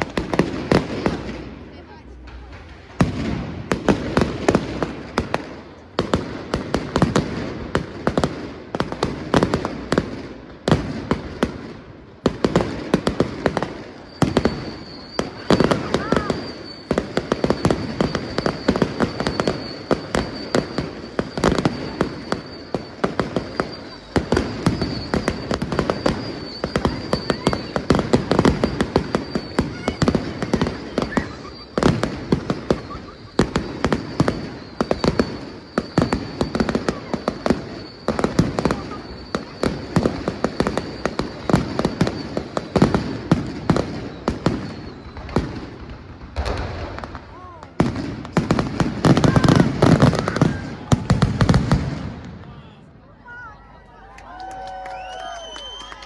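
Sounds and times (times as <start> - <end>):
fireworks bangs and crackles: 0.0 - 56.0
steady high whistle: 13.4 - 45.8, 52.4 - 56.0.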